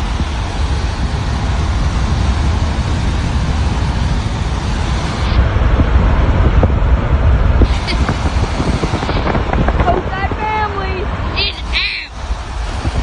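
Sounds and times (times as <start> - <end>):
low vehicle rumble: 0.0 - 13.0
road and wind noise: 0.0 - 13.0.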